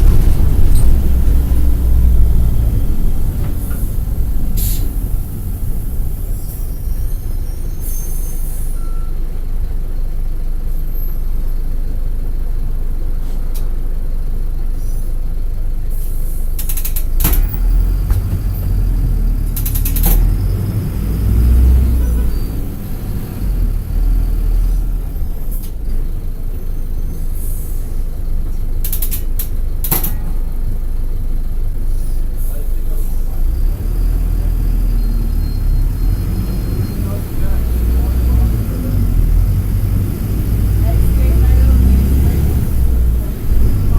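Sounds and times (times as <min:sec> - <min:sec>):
bus diesel engine drone: 0:00.0 - 0:43.9
air brake hisses: 0:04.6 - 0:05.1, 0:06.4 - 0:09.1, 0:14.8 - 0:15.2, 0:15.9 - 0:16.8, 0:26.8 - 0:28.0.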